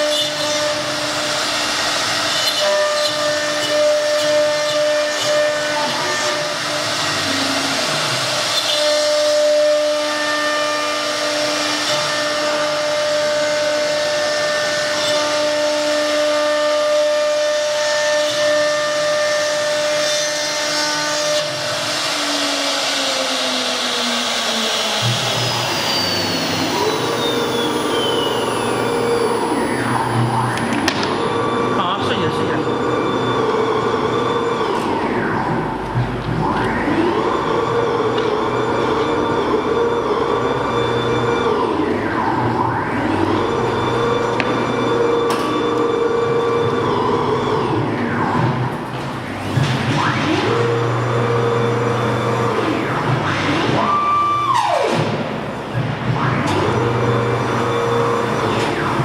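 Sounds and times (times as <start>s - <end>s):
router spindle whine: 0.0s - 59.0s
steady tone: 24.8s - 49.3s.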